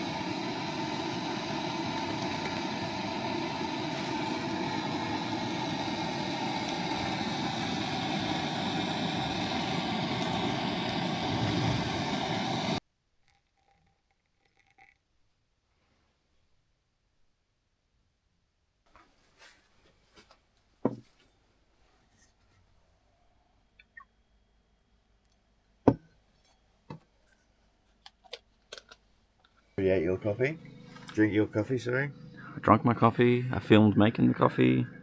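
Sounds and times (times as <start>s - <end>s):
faint steady tones: 29.7s - 35.0s.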